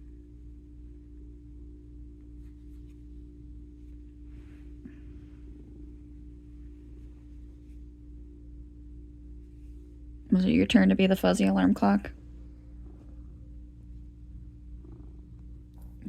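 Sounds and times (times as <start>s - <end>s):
electrical hum: 0.0s - 16.0s
faint rustles: 2.2s - 8.0s
cat purring: 12.0s - 16.0s.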